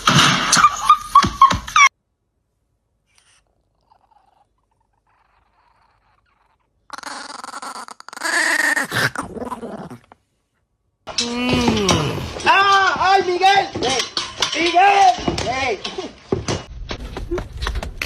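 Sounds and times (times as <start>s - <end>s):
dog growling: 3.4s - 10.3s, 11.2s - 12.4s.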